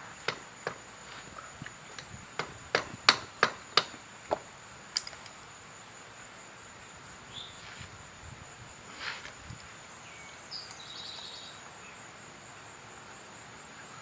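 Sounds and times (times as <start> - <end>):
hand tools knocking: 0.0 - 5.1.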